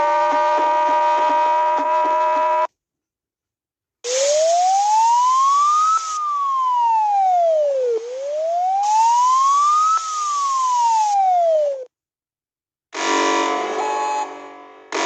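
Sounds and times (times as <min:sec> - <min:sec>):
wailing alarm siren: 0:00.0 - 0:02.7, 0:04.1 - 0:11.9
static hiss: 0:04.1 - 0:06.3, 0:07.4 - 0:11.2.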